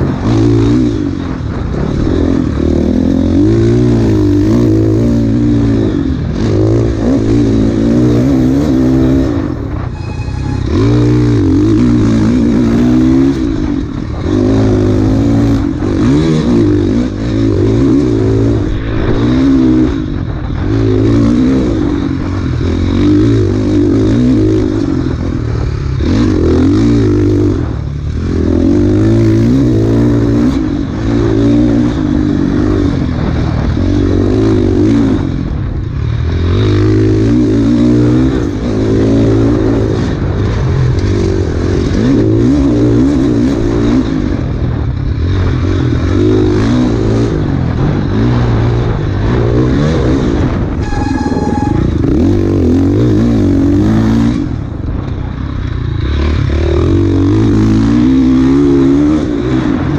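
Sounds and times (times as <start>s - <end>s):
dirt bike engine revving: 0.0s - 59.9s.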